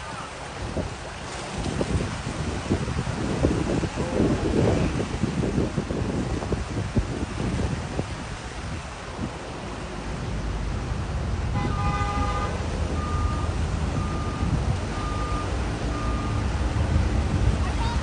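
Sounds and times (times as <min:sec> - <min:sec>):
road traffic rumble: 0:00.0 - 0:18.0
car horn: 0:11.5 - 0:13.4
short single-pitched beeps: 0:13.0 - 0:16.5.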